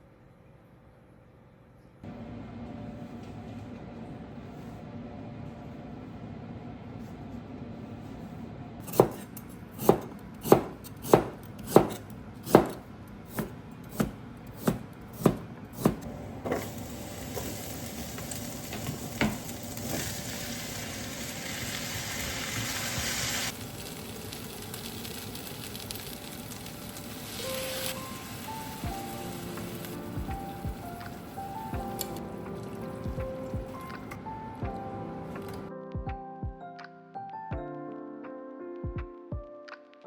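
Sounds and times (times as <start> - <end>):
knife chopping on cutting board: 8.8 - 16.1
steady hiss: 16.5 - 32.2.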